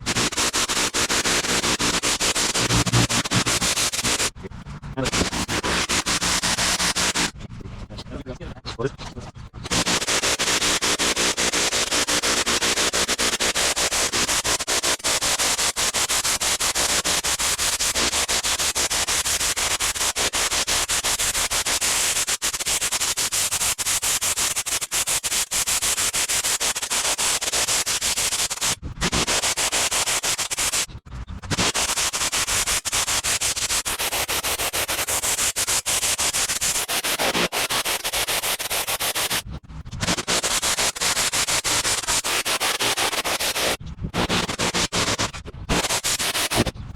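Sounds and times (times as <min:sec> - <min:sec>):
pressure washer spraying water: 0:00.0 - 0:04.4, 0:05.0 - 0:07.3, 0:09.6 - 0:21.6, 0:26.3 - 0:30.9, 0:31.5 - 0:39.4, 0:40.0 - 0:46.7.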